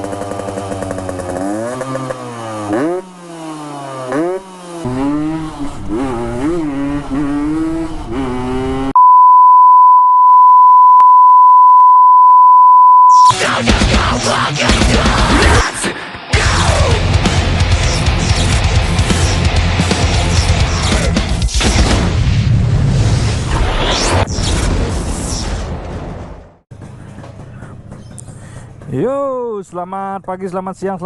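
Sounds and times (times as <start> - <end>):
two-stroke motorcycle revving: 0.0 - 9.0
loud steady beep tone: 9.0 - 13.4
loud heavy music: 13.3 - 21.5.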